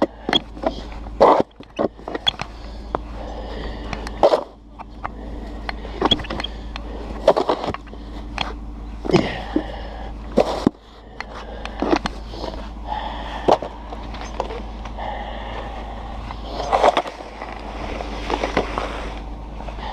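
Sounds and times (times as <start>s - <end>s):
snow shovel scraping pavement: 16.5s - 19.2s.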